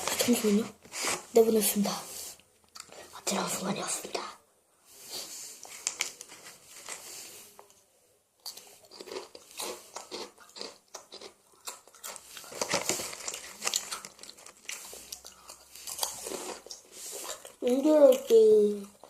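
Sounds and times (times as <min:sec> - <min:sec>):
crunchy chips being chewed: 0:08.4 - 0:19.0.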